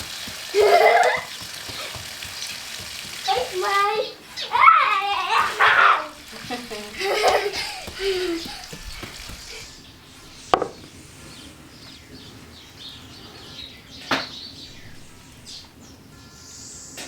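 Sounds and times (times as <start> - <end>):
sharp knocks: 0.0 - 3.5, 6.4 - 9.8
small birds chirping: 0.0 - 17.0.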